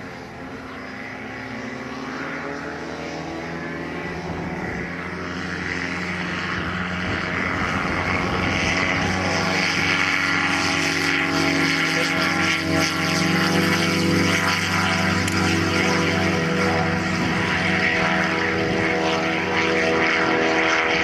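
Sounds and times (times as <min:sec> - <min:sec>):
model aircraft motor and propeller: 0:00.0 - 0:21.0.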